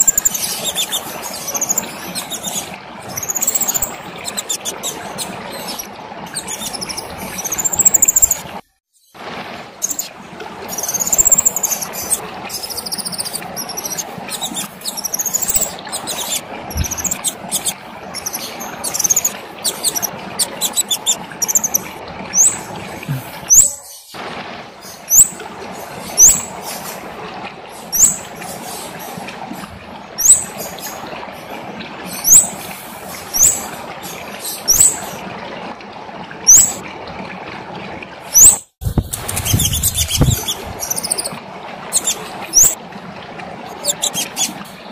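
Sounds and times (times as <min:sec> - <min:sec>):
songbird singing: 0:00.0 - 0:08.4, 0:09.8 - 0:10.1, 0:10.7 - 0:22.6, 0:23.5 - 0:24.1, 0:39.2 - 0:42.8, 0:43.7 - 0:44.5.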